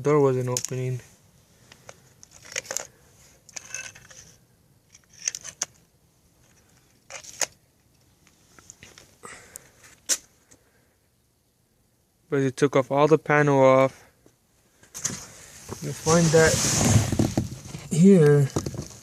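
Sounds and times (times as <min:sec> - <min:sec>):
small parts clicking and rattling: 0:00.5 - 0:00.8, 0:01.7 - 0:05.8, 0:06.4 - 0:08.0.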